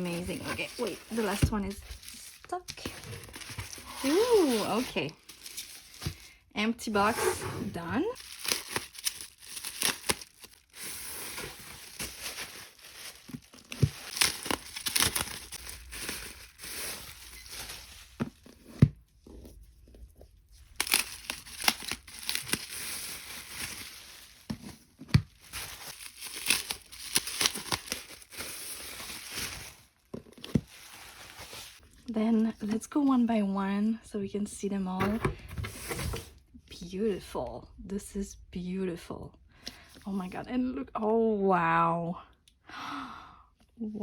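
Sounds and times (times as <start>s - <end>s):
packaging crinkling and tearing: 0.0s - 6.4s, 8.2s - 18.8s, 20.6s - 31.8s.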